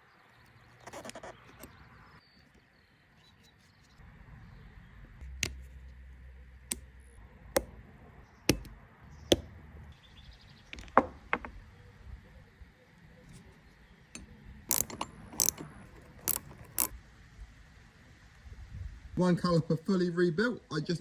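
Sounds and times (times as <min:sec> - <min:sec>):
metal tools knocking and clicking: 0:08.5 - 0:09.5, 0:14.2 - 0:16.9.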